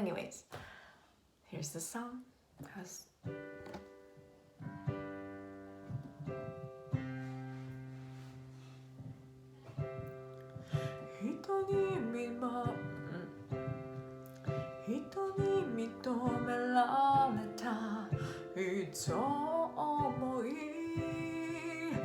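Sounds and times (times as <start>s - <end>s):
person singing: 10.8s - 13.9s, 14.5s - 22.0s.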